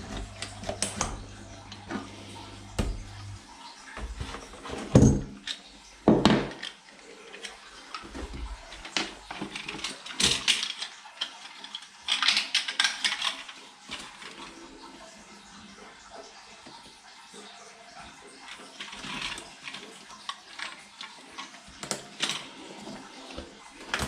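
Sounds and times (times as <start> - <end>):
hard objects clinking and clattering: 4.0 - 14.6.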